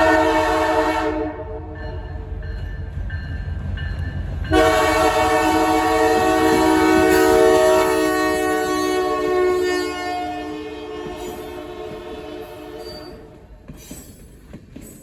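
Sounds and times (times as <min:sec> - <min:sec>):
locomotive air horn chord: 0:00.0 - 0:01.8, 0:04.5 - 0:13.2.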